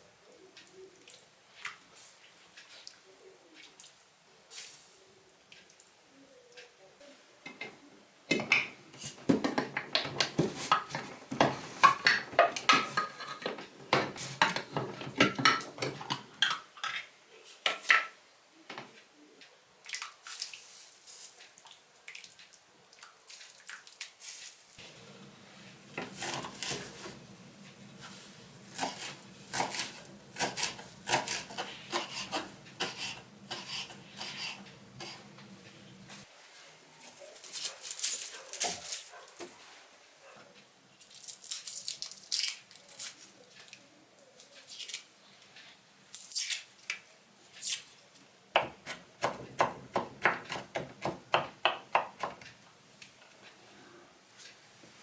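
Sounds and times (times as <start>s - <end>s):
metal utensils clattering on dishes: 10.8s - 17.1s.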